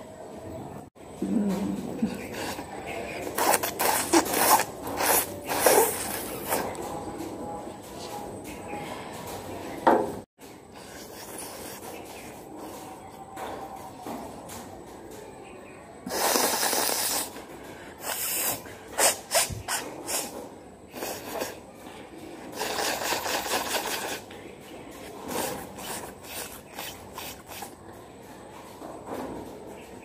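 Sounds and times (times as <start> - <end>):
person blowing nose: 3.4 - 6.6, 16.1 - 17.4, 18.0 - 20.3, 20.9 - 21.6, 22.6 - 24.2.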